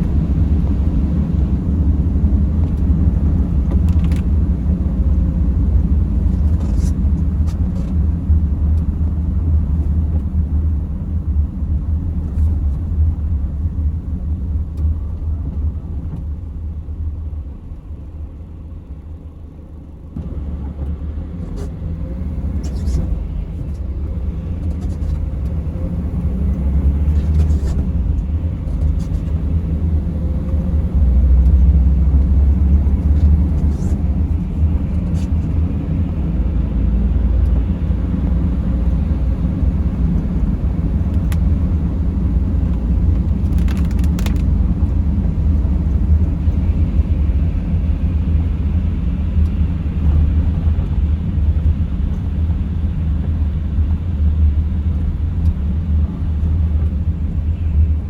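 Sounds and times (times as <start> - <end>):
van road and engine rumble: 0.0 - 58.0.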